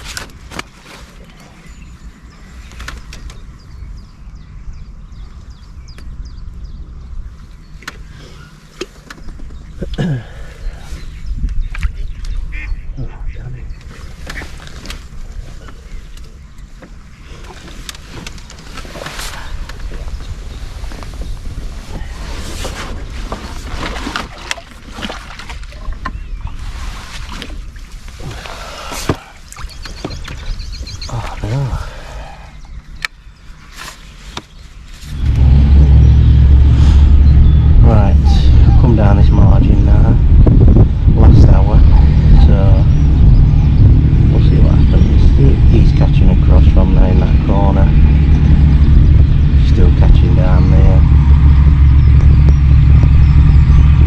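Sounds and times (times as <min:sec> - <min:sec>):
steady low rumble: 0:01.6 - 0:24.7, 0:34.6 - 0:54.0
small bird chirping: 0:28.4 - 0:35.3.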